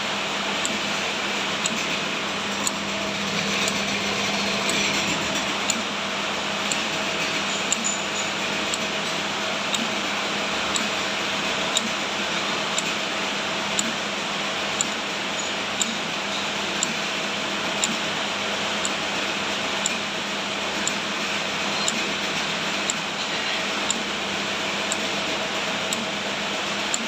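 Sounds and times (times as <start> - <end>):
moulding machine motor hum: 0.1 - 12.2
sharp machine clicks: 0.6 - 6.0, 6.6 - 10.0, 10.7 - 11.0, 11.6 - 12.0, 12.7 - 13.0, 13.7 - 14.0, 14.7 - 16.1, 16.8 - 17.1, 17.7 - 18.1, 19.8 - 23.2, 23.8 - 24.2, 24.8 - 26.2, 26.8 - 27.0.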